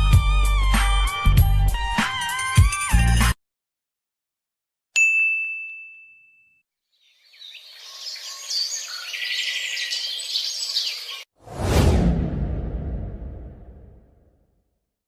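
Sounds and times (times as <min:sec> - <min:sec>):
bright bell ding: 0:05.0 - 0:06.6
birds chirping and twittering: 0:06.9 - 0:11.3.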